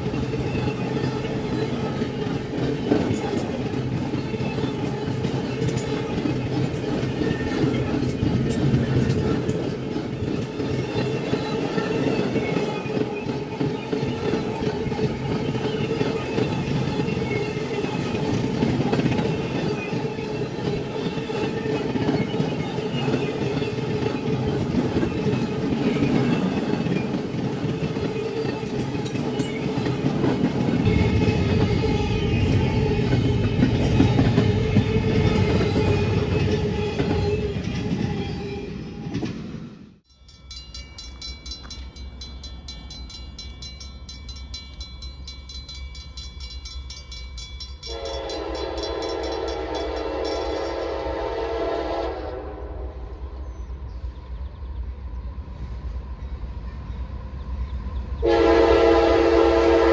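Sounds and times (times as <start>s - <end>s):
train passing with rumble: 0.0s - 59.9s
train wheels on rails: 0.0s - 59.9s
locomotive horn: 47.9s - 53.1s, 58.2s - 59.9s.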